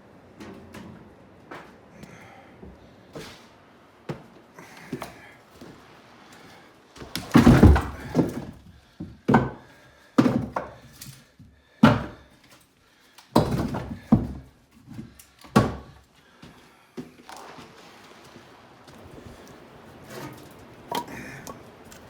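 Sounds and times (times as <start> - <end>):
logs thudding onto pile: 7.0 - 9.6, 13.4 - 14.5, 15.5 - 16.0.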